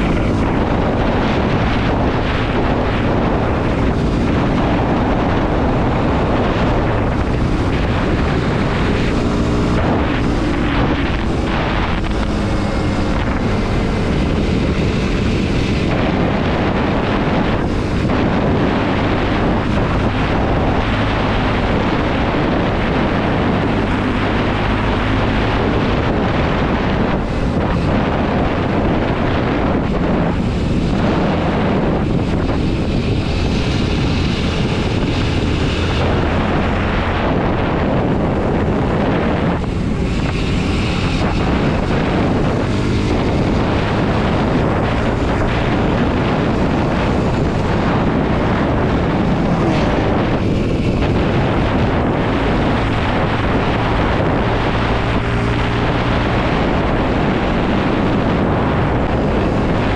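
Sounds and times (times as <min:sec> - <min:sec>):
motorcycle engine running: 0:00.0 - 0:59.9
wind noise on microphone: 0:00.0 - 0:59.9.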